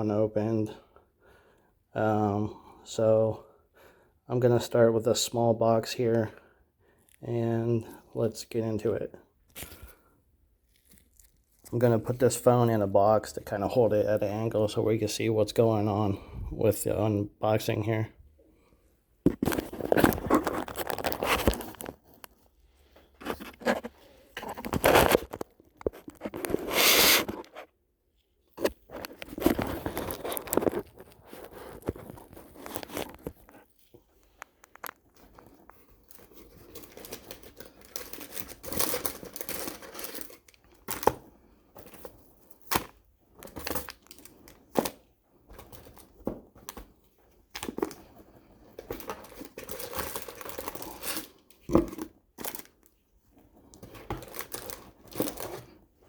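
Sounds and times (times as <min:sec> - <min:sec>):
cardboard and packaging rustling: 0:09.4 - 0:12.5, 0:19.2 - 0:27.8, 0:28.5 - 0:56.0.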